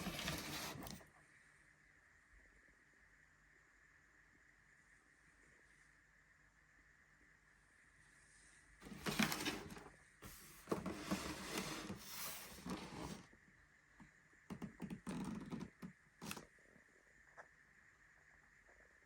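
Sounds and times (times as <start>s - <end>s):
packaging crinkling and scraping: 0.0s - 1.0s, 8.8s - 13.2s.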